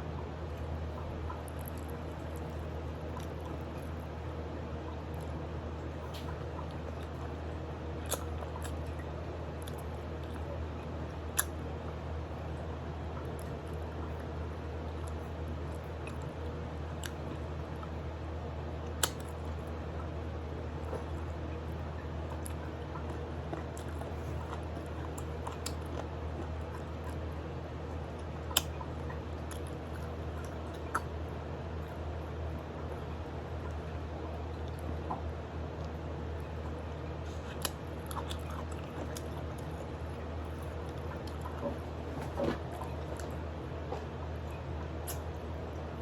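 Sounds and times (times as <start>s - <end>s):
steady low hum: 0.0s - 46.0s
chewing and sucking on bones: 1.3s - 4.0s, 8.0s - 10.6s, 22.3s - 27.3s, 29.4s - 31.1s, 35.8s - 43.4s
small wet mouth clicks: 8.0s - 8.8s, 11.3s - 11.6s, 19.0s - 19.4s, 37.3s - 39.3s, 45.0s - 45.3s.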